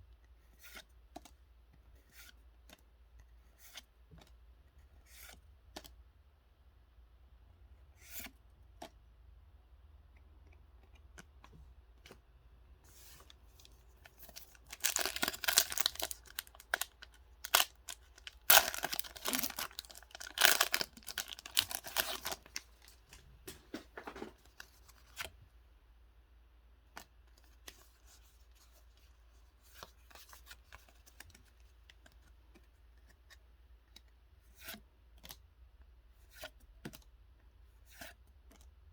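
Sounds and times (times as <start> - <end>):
cards and packaging rustling: 12.9 - 25.3
packaging tearing and crinkling: 14.3 - 23.2.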